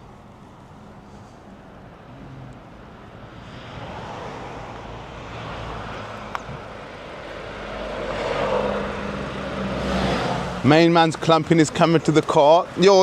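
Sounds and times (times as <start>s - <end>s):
low engine hum: 0.0s - 13.0s
vehicle rushing past: 3.3s - 12.2s.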